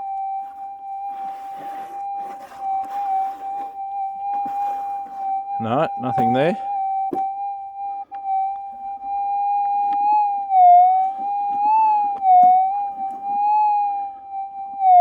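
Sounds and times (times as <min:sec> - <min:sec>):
faint scraping and crunching: 0:00.0 - 0:07.3
metal detector threshold tone: 0:00.0 - 0:15.0.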